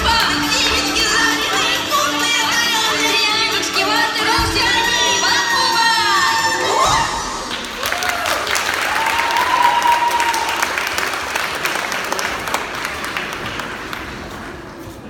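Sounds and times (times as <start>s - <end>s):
audience applauding: 7.5s - 14.8s
person cheering: 7.8s - 10.7s.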